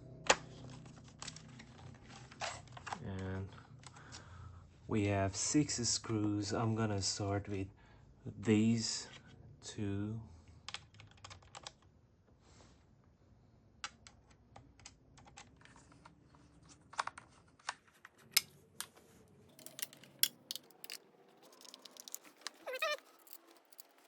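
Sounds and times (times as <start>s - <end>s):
screwdriver clicking into plastic: 21.6s - 24.0s.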